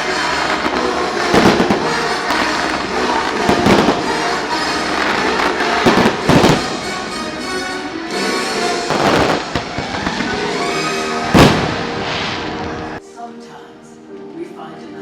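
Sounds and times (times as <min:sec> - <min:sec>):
fireworks bangs: 0:00.0 - 0:13.0
music over loudspeakers: 0:00.0 - 0:15.0.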